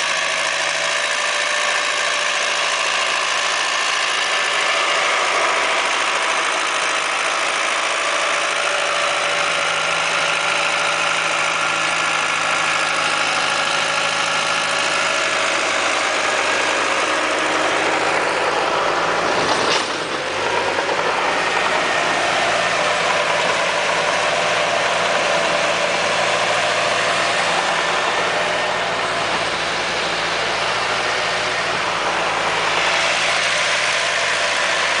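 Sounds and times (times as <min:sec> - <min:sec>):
rotary tiller working soil: 0:00.0 - 0:35.0
tractor engine running: 0:00.0 - 0:35.0.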